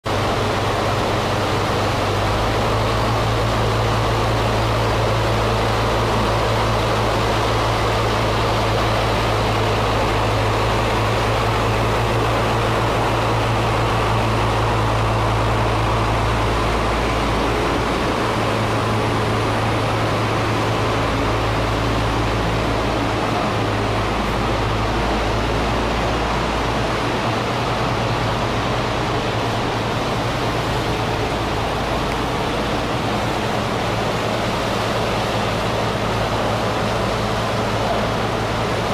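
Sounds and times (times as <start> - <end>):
truck engine running: 0.0 - 38.9.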